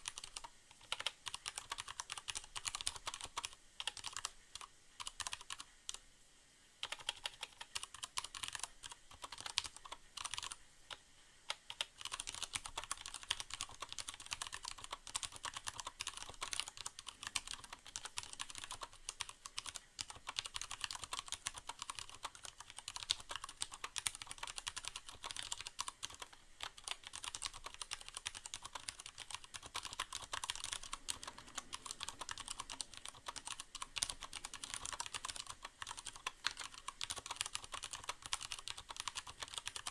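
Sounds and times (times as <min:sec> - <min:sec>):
typing on mechanical keyboard: 0:00.0 - 0:06.0, 0:06.8 - 0:39.9.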